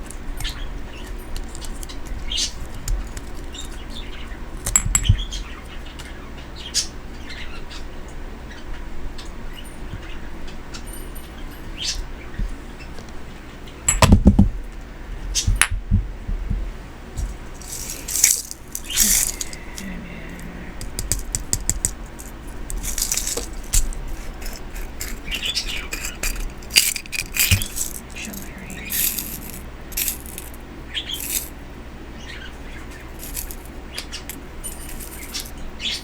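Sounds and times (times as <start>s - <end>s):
small metal pieces clinking: 17.6s - 31.5s, 33.1s - 33.7s, 34.3s - 35.6s.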